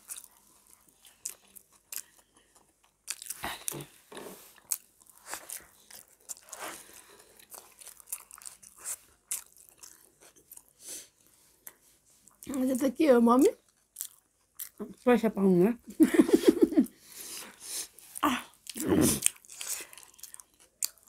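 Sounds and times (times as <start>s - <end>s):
crunchy biting and chewing: 0.0s - 10.8s, 13.6s - 14.8s, 18.0s - 21.0s.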